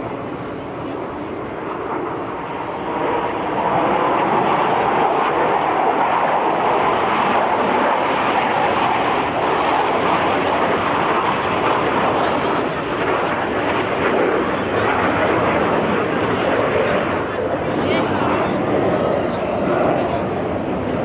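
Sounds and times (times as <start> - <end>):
jet aircraft flying over: 0.0 - 21.0.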